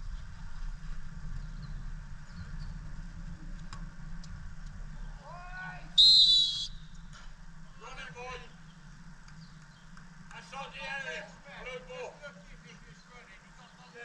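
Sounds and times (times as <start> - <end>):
low outdoor rumble: 0.0 - 14.0
referee's whistle blast: 6.0 - 6.8.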